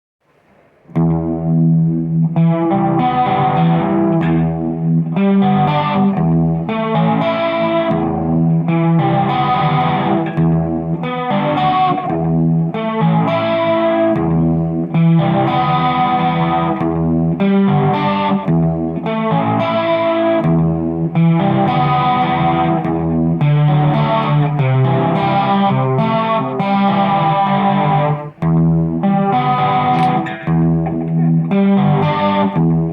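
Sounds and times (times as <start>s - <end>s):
distorted electric guitar chords: 0.9s - 32.9s.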